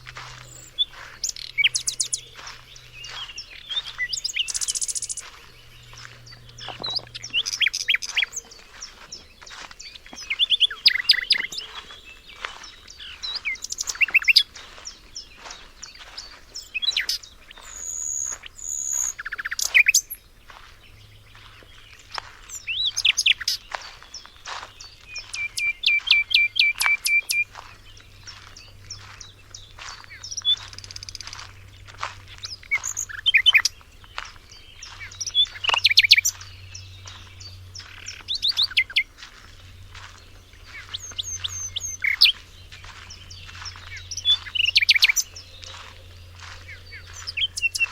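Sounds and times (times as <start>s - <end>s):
songbirds singing and chirping: 0.0s - 47.9s
bird fast repeated notes: 25.2s - 27.4s.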